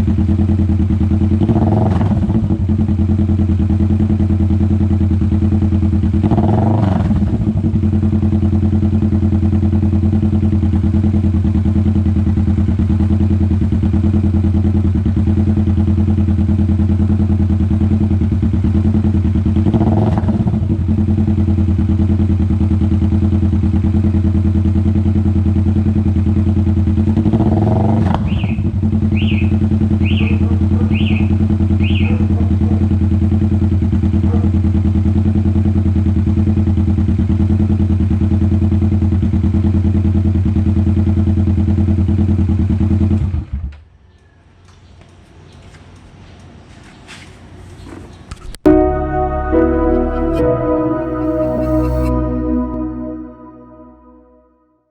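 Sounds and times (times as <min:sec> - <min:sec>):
motorcycle engine idling: 0:00.0 - 0:01.6, 0:02.2 - 0:06.3, 0:07.2 - 0:19.8, 0:20.5 - 0:27.4, 0:28.2 - 0:46.6.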